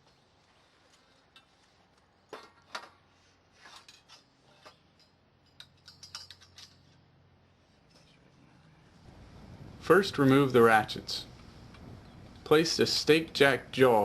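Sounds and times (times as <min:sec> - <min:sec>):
metal tent poles clinking: 0:03.8 - 0:07.0.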